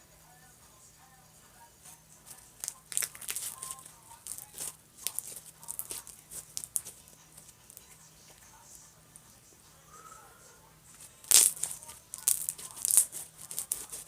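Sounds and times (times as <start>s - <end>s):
slime crackling pops and crunches: 2.6s - 6.0s, 11.3s - 13.8s.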